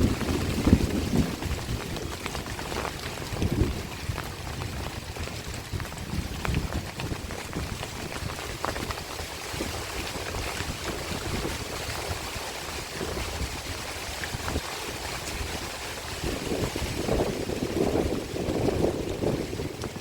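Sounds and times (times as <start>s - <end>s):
heavy rain in strong wind: 0.0s - 20.0s.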